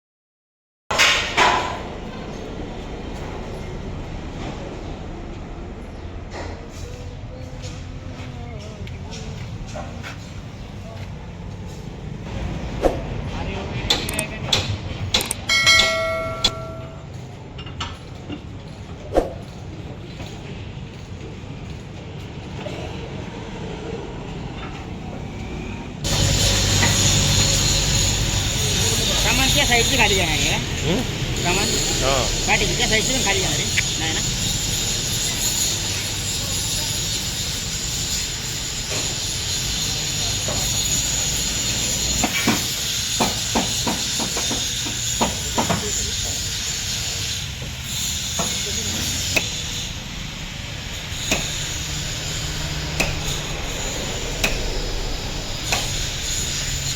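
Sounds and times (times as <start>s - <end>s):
hammer striking steel: 13.9s - 17.2s, 40.5s - 47.1s, 48.0s - 56.9s
loud machine noise with hiss: 24.6s - 56.9s
low mechanical rumble: 49.6s - 56.9s.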